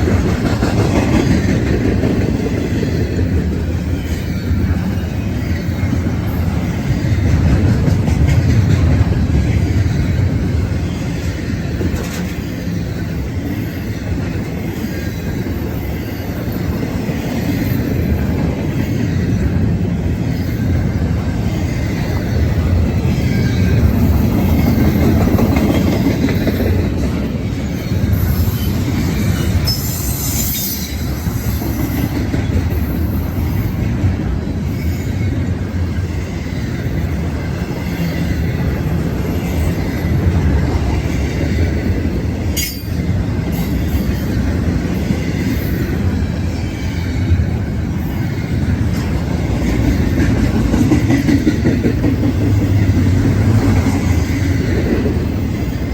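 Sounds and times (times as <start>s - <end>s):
wheels clattering over rail joints: 0.0s - 13.2s
freight train wheels rumbling: 0.0s - 55.9s.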